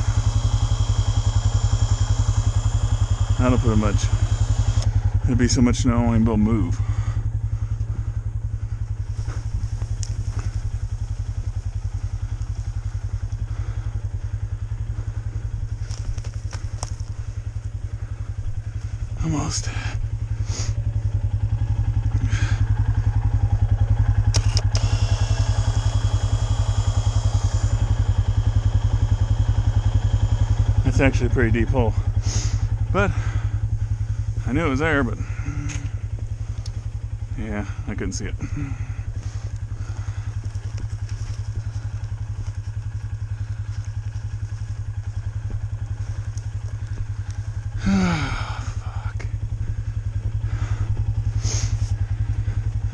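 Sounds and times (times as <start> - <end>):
vehicle engine running: 0.0 - 52.9
sharp clicks: 24.2 - 26.2.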